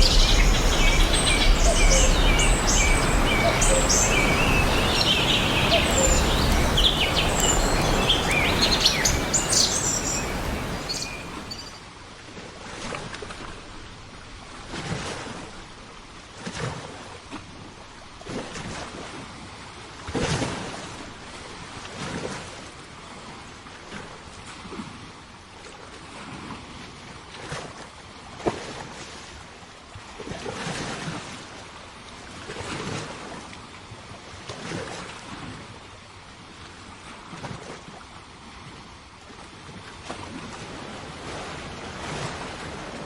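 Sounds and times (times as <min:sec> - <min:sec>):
loud steady rushing noise: 0:00.0 - 0:11.7
small birds chirping: 0:00.0 - 0:11.8
small waves lapping: 0:00.0 - 0:11.8, 0:39.2 - 0:43.0.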